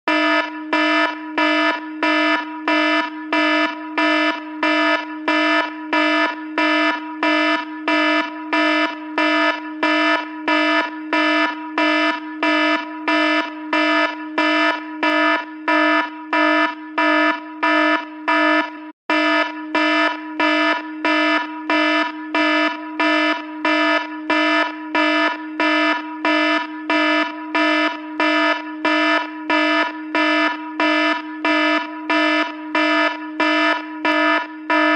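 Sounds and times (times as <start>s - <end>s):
phone alarm buzzy tone: 0.1s - 34.9s.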